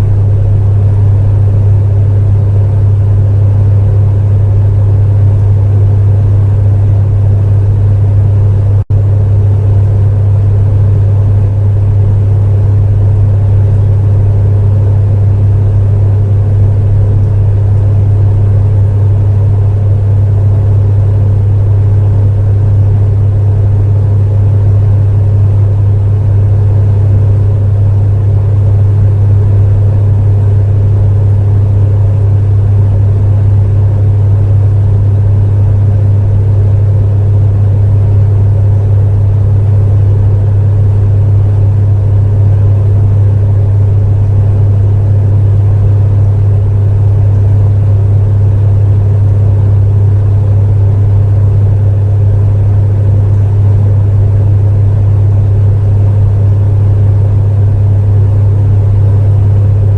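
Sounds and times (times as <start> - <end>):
fan air rushing: 0.0 - 59.9
space heater low hum: 0.0 - 59.9.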